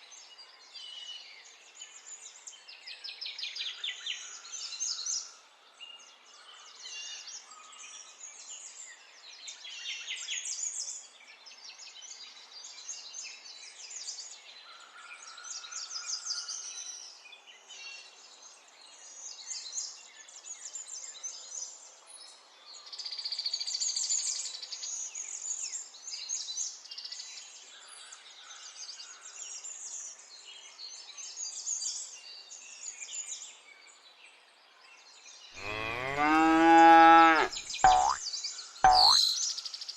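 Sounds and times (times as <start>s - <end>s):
small birds chirping: 35.6s - 38.2s, 38.9s - 39.4s
rapid bird trill: 37.4s - 38.2s, 38.9s - 39.3s.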